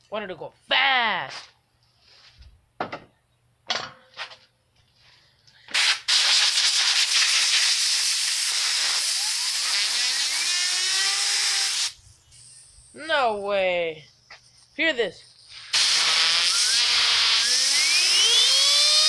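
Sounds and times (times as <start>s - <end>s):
gas jetting hiss: 5.7s - 12.9s, 15.5s - 18.1s
spinner bearing whine: 16.4s - 19.0s.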